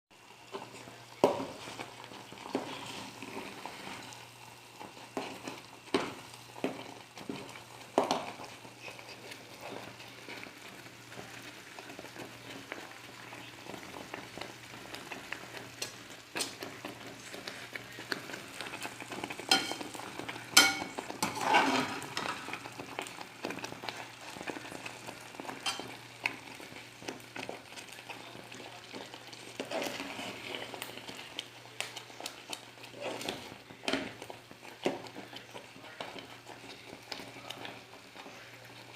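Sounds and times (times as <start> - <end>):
pot hissing: 0.2 - 28.6
spoon knocking against pot: 20.6 - 20.9.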